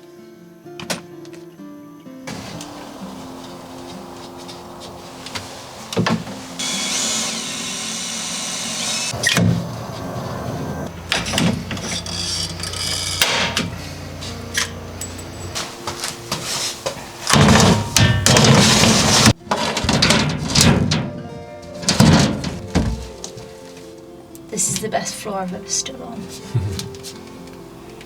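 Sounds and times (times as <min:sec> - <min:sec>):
power drill drilling into metal: 0:05.9 - 0:09.4
knocks and clanks on metal floor: 0:15.0 - 0:23.4.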